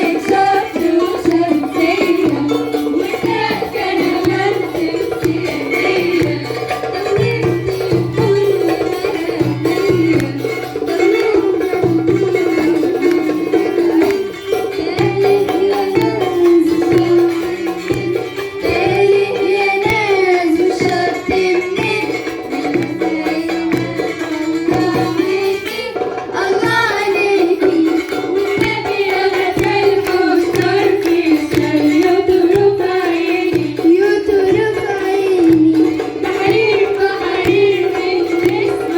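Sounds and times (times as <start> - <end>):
hand drum rhythm: 0.0 - 38.9
plucked lyre: 0.0 - 38.9
woman singing folk song: 0.0 - 38.9.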